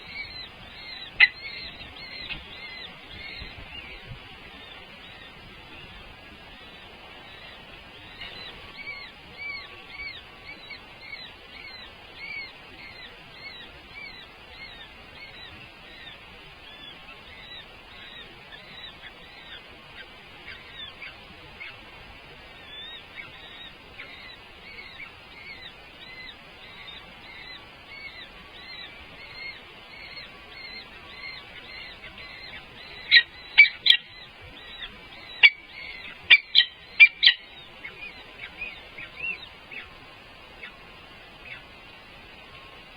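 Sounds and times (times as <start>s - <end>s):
bird chirping: 0.0s - 6.0s, 22.6s - 41.7s
loud sharp bird calls: 0.0s - 6.0s, 22.6s - 42.9s.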